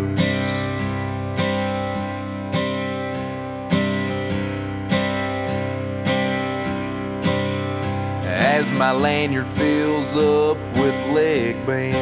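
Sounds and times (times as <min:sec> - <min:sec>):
acoustic guitar strumming chords: 0:00.0 - 0:12.0.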